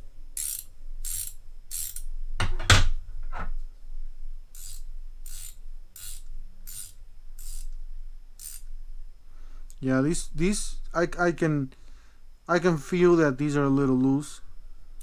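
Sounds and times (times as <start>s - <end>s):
ratchet wrench pawl clicking: 0.4s - 2.1s, 4.5s - 7.8s, 8.4s - 8.7s.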